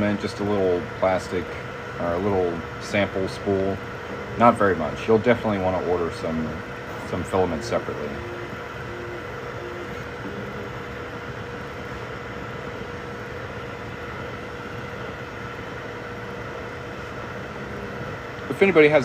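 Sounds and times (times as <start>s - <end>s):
three d printers whirring: 0.0s - 19.0s
short electronic tone: 7.0s - 10.8s.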